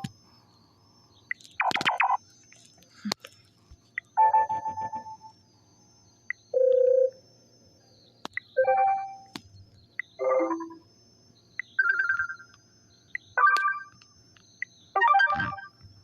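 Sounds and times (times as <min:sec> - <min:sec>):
phone beep: 0:04.2 - 0:05.3, 0:06.5 - 0:07.2, 0:15.0 - 0:15.8.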